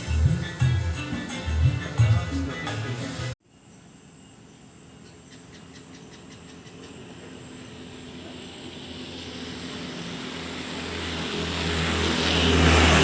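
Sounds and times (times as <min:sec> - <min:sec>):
vehicle engine running: 0:05.9 - 0:13.0.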